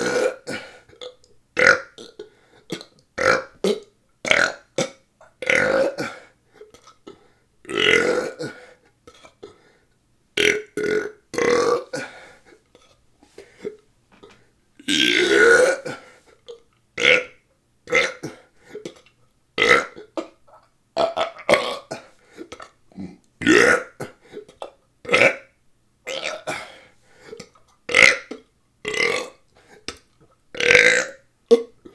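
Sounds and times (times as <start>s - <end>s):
person burping: 0.0s - 7.0s, 7.7s - 9.4s, 10.4s - 12.2s, 14.2s - 19.0s, 19.6s - 25.5s, 26.1s - 26.8s, 27.4s - 29.4s, 30.6s - 31.9s.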